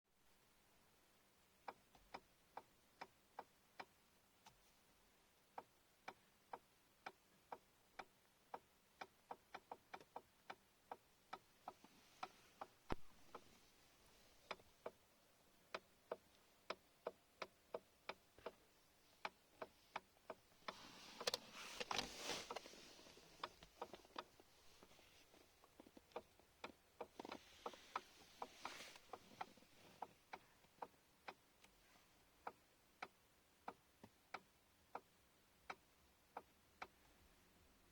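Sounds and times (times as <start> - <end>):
soft rubbing or rustling: 11.7 - 14.4, 20.6 - 25.6, 27.1 - 30.2.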